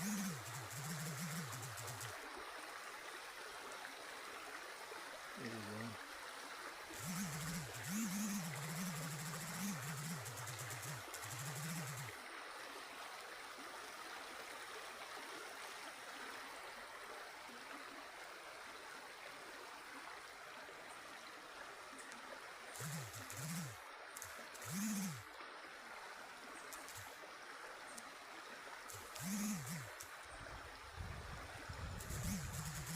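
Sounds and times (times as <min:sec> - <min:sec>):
low voice: 0:05.4 - 0:06.0.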